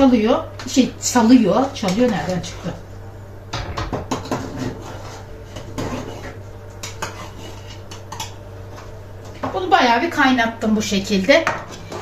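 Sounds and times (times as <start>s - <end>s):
low hum: 2.4s - 9.4s.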